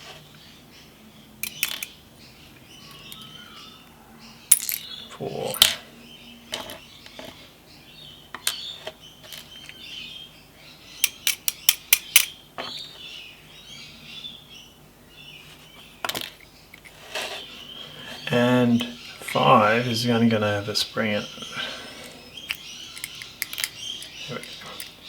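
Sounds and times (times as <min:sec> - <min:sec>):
small metallic clicks of lock pins: 0:01.4 - 0:01.9, 0:11.0 - 0:12.3, 0:22.0 - 0:25.0.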